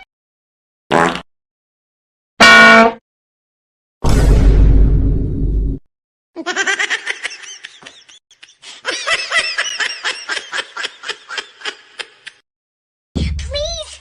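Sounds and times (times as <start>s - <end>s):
loud low booming effect: 4.0s - 5.8s
high-pitched cackling laughter: 6.4s - 12.4s.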